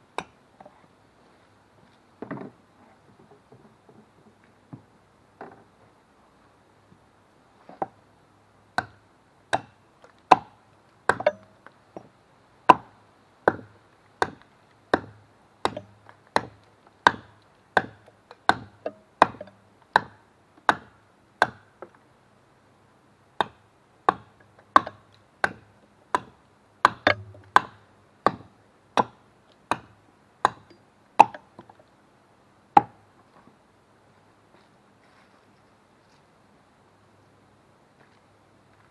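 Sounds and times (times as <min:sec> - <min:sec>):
hatchet chopping wood: 0:08.8 - 0:11.5, 0:12.7 - 0:21.7, 0:23.4 - 0:31.5, 0:32.8 - 0:33.0.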